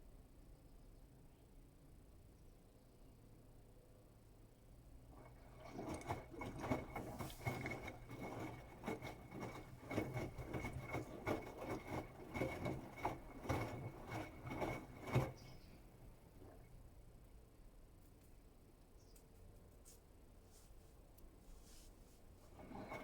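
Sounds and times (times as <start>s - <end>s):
laundry tumbling in washing machine: 5.0s - 15.8s, 22.4s - 23.0s
washing machine motor whine: 5.1s - 15.6s, 22.5s - 23.0s.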